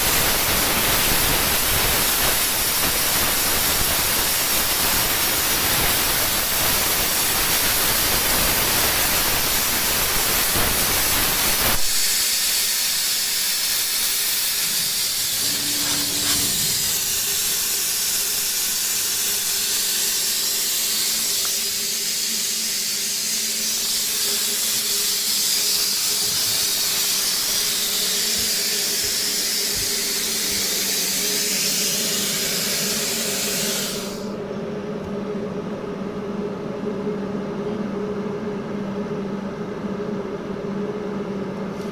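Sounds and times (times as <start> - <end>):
plasma cutting torch hissing: 0.0 - 34.4
low rumble: 14.5 - 17.8.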